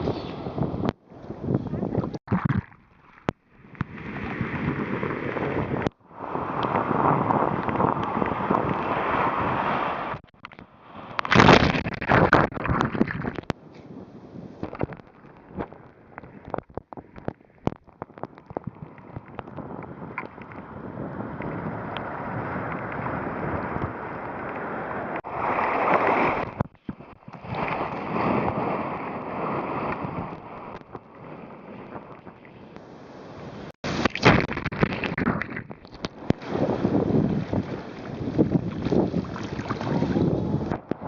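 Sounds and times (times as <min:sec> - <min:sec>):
wind buffeting microphone: 0:00.0 - 0:02.2, 0:03.7 - 0:10.2, 0:11.3 - 0:25.5, 0:33.4 - 0:41.0
ocean surf washing in: 0:03.6 - 0:12.4, 0:36.1 - 0:40.7.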